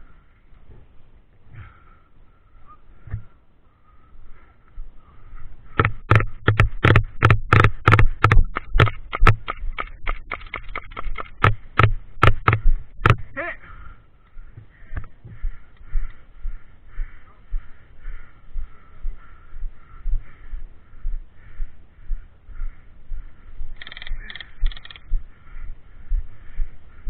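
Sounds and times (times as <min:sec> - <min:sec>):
airsoft guns firing: 0:05.8 - 0:13.3.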